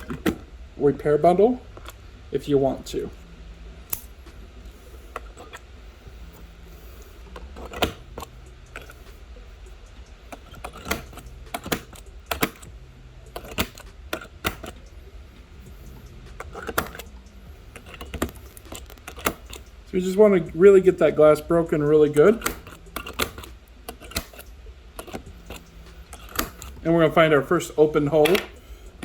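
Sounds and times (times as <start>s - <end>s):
glass breaker tool cracking glass: 22.0s - 26.9s.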